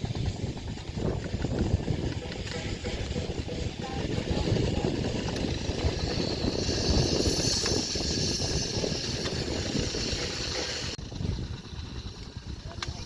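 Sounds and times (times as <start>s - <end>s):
diesel engine rough rumble: 0.0s - 13.0s
steady hiss: 4.2s - 11.0s.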